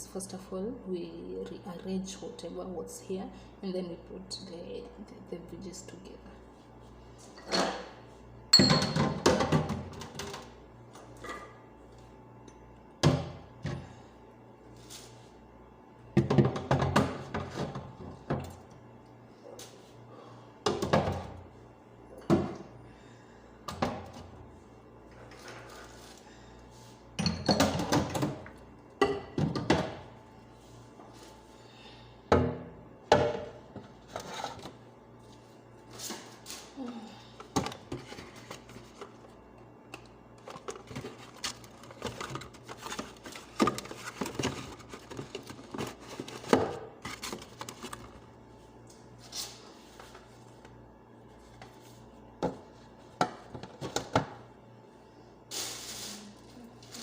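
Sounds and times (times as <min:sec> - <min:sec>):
food containers clattering on shelves: 0:08.6 - 0:10.6, 0:16.2 - 0:18.6, 0:27.2 - 0:30.1.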